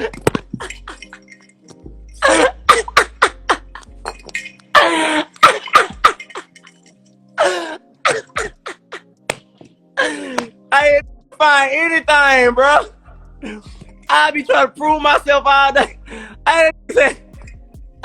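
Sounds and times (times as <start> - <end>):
faint background music: 0.0 - 18.0
man coughing: 2.2 - 6.6, 7.4 - 9.1.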